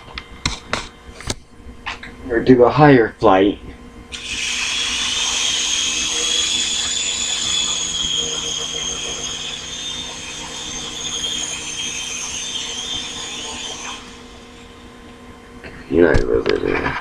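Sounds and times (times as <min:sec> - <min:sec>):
model helicopter rotor whining: 0:04.1 - 0:15.6.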